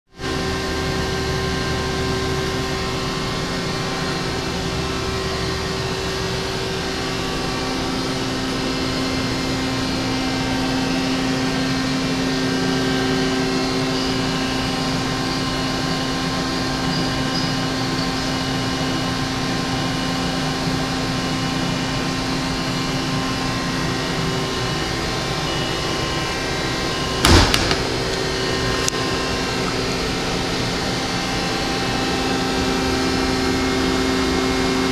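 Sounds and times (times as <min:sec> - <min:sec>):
machine hum with held tones: 0:00.2 - 0:34.9
sharp knock: 0:27.2 - 0:28.1.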